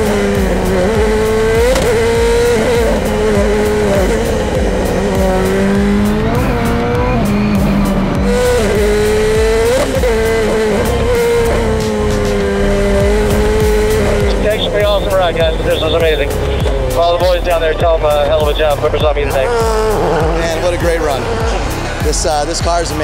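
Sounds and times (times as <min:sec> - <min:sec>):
exhaust crackling pops: 0:00.0 - 0:06.0
race car engine at full throttle: 0:00.0 - 0:23.0.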